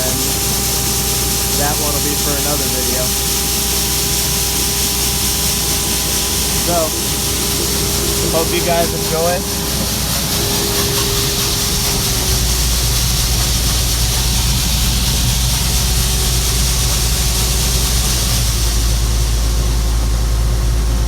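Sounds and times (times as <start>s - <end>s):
diesel engine droning: 0.0s - 21.0s
steady hiss of air: 0.0s - 21.0s.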